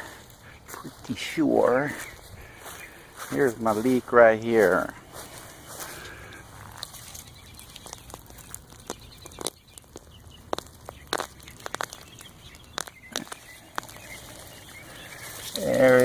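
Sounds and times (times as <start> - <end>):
roots and soil snapping and rustling: 3.2 - 16.0.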